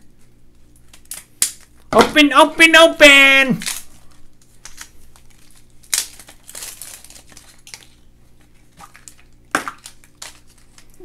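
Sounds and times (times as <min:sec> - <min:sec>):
sharp packaging crackle: 0:00.8 - 0:01.9, 0:03.6 - 0:11.0
packaging crinkling and rustling: 0:03.6 - 0:11.0.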